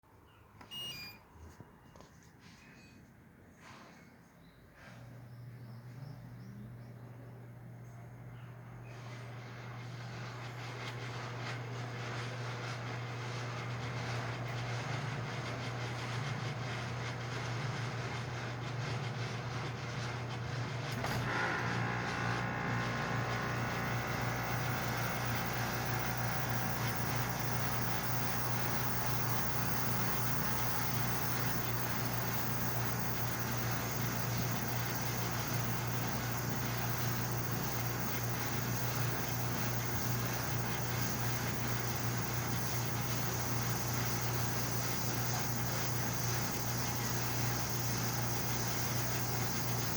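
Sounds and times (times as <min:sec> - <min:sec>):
air conditioner hum and fan: 0:00.1 - 0:49.9
air conditioner click: 0:00.6 - 0:01.2, 0:20.9 - 0:49.9
faint high whine: 0:00.6 - 0:01.2, 0:21.0 - 0:49.9.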